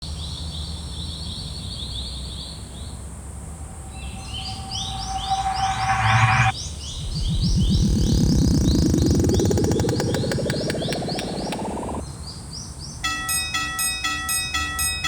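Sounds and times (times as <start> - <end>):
rushing noise with steady tone: 3.2 - 12.0
high bird-like chirps: 3.4 - 12.0.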